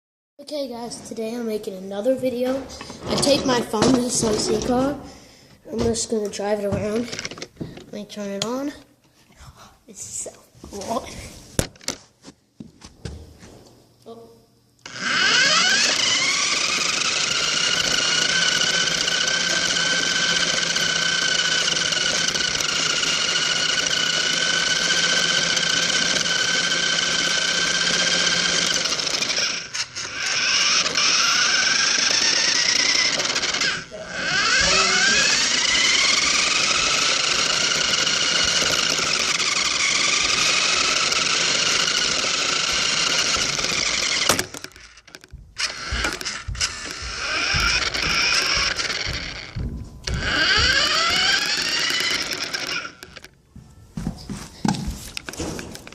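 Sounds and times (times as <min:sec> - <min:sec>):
toy car motor whining: 0:06.8 - 0:07.5, 0:14.8 - 0:53.4.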